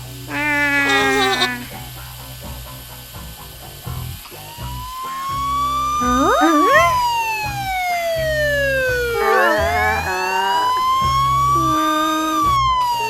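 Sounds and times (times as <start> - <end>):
cartoon siren wailing: 0.3 - 1.6, 4.6 - 13.0
whistle-like pitch glides: 4.4 - 13.0.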